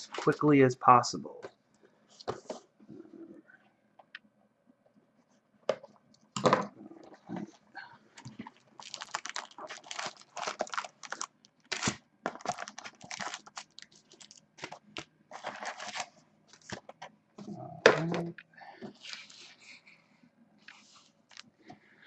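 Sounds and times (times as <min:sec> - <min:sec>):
card packaging tearing and crinkling: 0:08.4 - 0:16.8.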